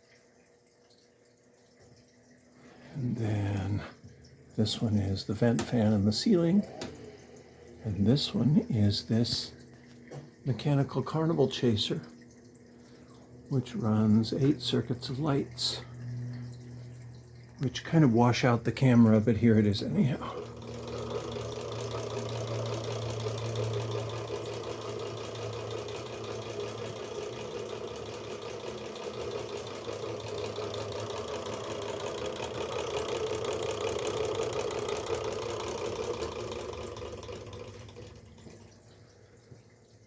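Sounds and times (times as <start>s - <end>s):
motor humming: 2.3s - 39.6s
mechanical rattle: 20.4s - 38.4s.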